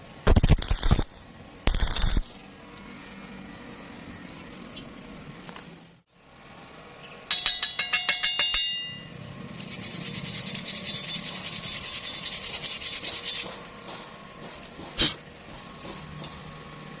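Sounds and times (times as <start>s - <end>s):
ringing metal clinks: 7.3s - 9.1s
sharp metal knock: 7.3s - 9.1s
metal filing scraping: 9.6s - 13.7s.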